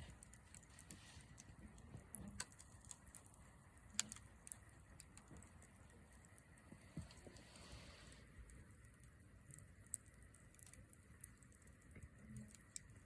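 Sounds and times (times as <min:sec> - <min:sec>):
campfire crackling: 0:00.0 - 0:13.0.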